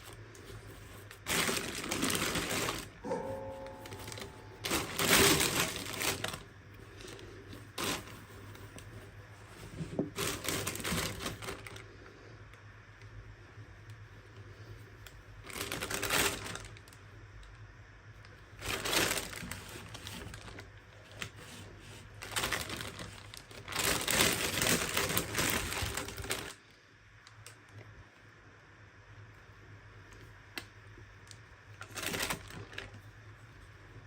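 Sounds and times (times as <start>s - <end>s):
toy packaging crinkling and clicking: 0.9s - 3.0s, 4.1s - 6.4s, 10.1s - 11.8s, 15.4s - 17.0s, 18.6s - 21.3s, 22.2s - 26.6s, 31.3s - 33.0s.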